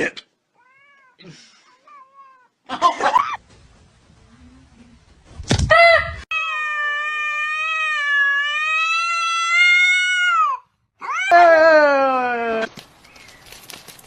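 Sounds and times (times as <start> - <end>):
cat yowling: 6.3 - 11.8.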